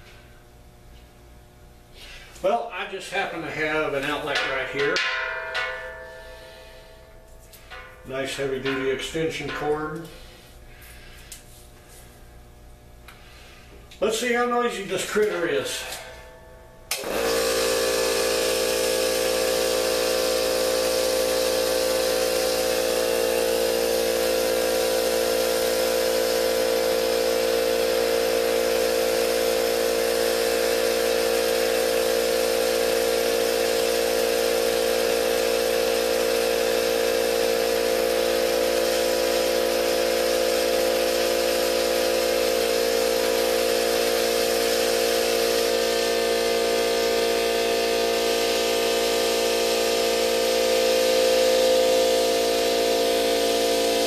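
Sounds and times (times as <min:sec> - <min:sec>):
air compressor droning: 0:00.0 - 0:54.0.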